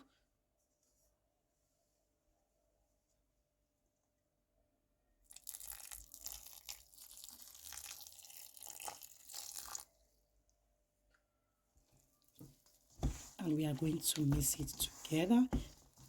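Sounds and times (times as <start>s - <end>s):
milk pouring into a bowl: 5.3s - 10.0s.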